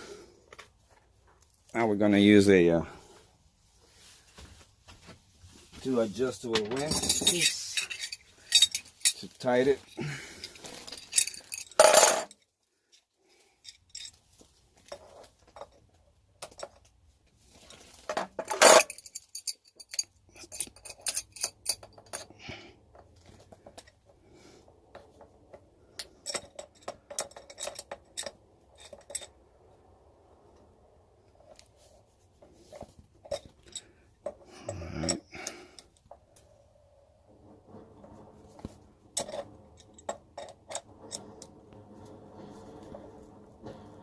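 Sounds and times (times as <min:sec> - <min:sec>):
wrenches clinking on metal fitting: 0:06.5 - 0:14.2, 0:18.1 - 0:24.0, 0:26.0 - 0:29.4, 0:32.7 - 0:36.0, 0:39.2 - 0:41.5.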